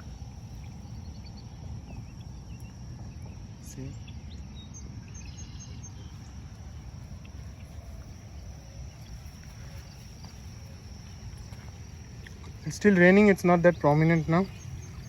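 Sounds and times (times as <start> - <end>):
faint bird chirps: 0.0 - 11.6
wind rumble on microphone: 0.0 - 15.0.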